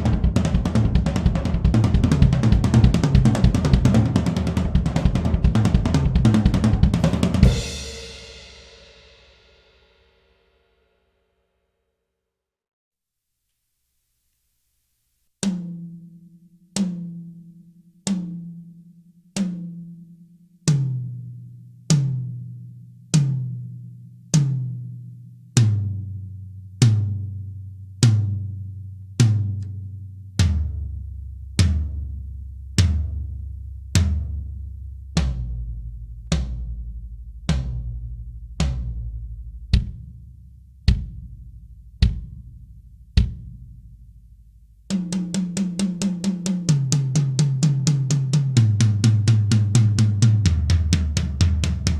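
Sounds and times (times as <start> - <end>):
drum hits ringing out: 0.0 - 9.4, 39.7 - 40.2, 40.9 - 41.4, 42.0 - 43.9, 48.5 - 51.9.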